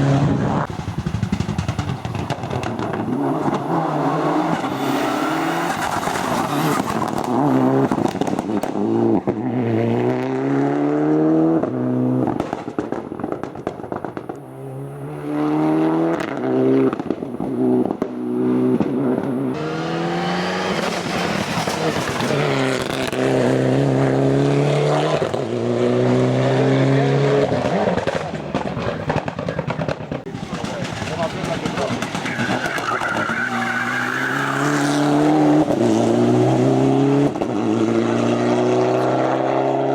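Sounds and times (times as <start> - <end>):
car engine revving: 0.0 - 39.9
exhaust crackling and popping: 0.4 - 9.4, 11.6 - 14.6, 16.1 - 19.6, 20.8 - 24.0, 27.5 - 36.1.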